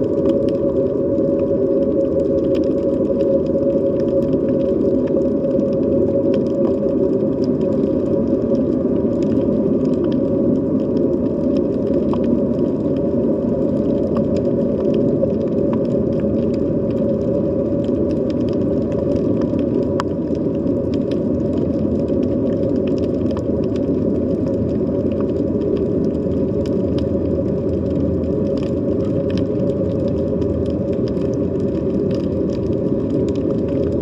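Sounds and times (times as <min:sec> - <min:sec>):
faint clicks and crackles: 0:00.0 - 0:34.0
underwater low rumble: 0:00.0 - 0:34.0.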